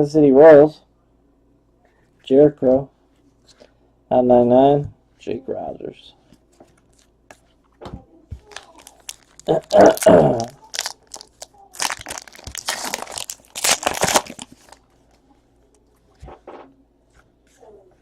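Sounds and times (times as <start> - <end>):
foil wrappers tearing and crinkling: 8.4 - 14.9.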